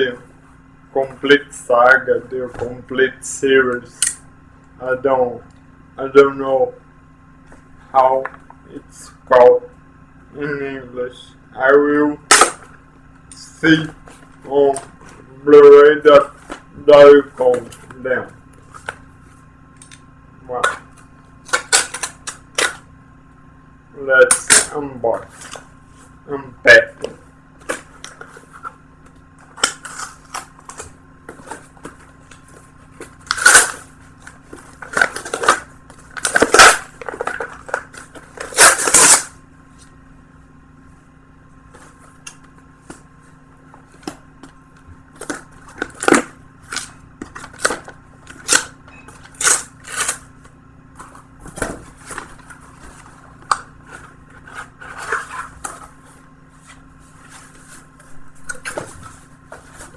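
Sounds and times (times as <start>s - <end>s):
packaging crackling and tearing: 45.2s - 50.2s.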